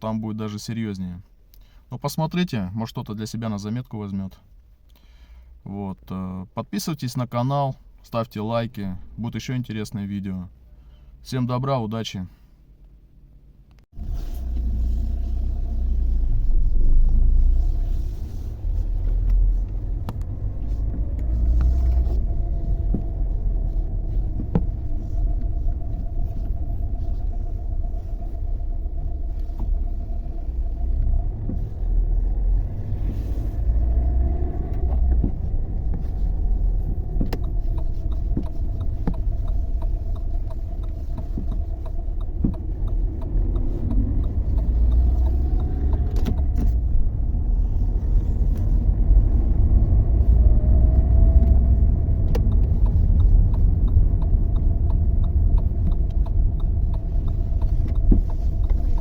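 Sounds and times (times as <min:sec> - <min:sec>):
road rumble inside car: 0:00.0 - 0:59.0
suspension knocking: 0:19.1 - 0:33.0, 0:33.6 - 0:47.2, 0:51.3 - 0:59.0.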